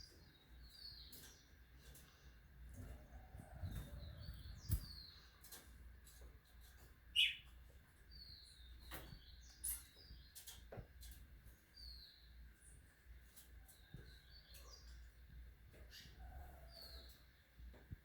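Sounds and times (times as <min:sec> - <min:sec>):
small birds chirping: 0:00.0 - 0:18.0.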